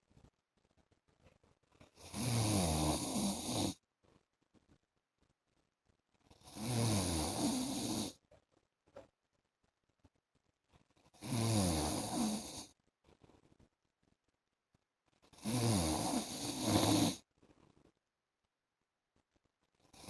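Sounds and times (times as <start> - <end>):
man snoring: 2.0 - 3.8, 6.5 - 8.2, 11.2 - 12.7, 15.4 - 17.2.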